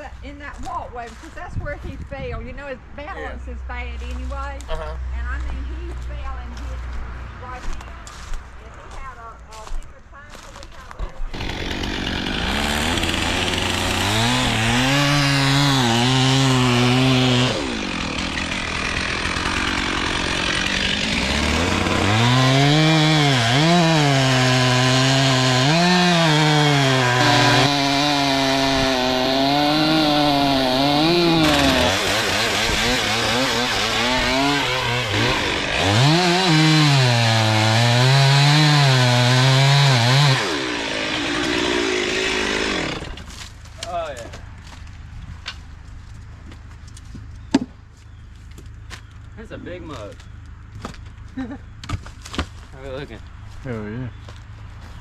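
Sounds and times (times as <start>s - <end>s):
chainsaw cutting wood: 11.3s - 43.5s.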